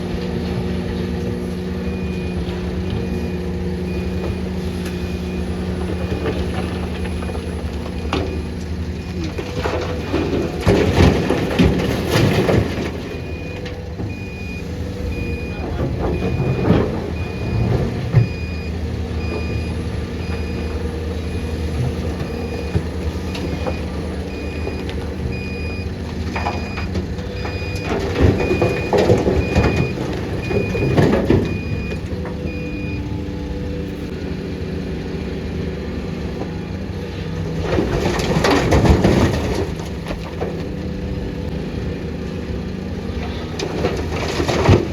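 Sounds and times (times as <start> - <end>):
heavy diesel machinery running: 0.0 - 44.9
reversing alarm beeping: 1.3 - 10.1, 12.2 - 34.1.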